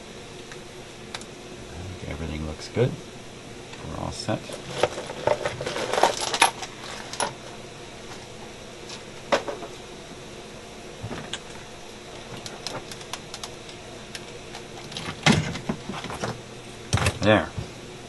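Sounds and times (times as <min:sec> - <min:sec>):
small metal parts clinking: 0:04.6 - 0:07.4.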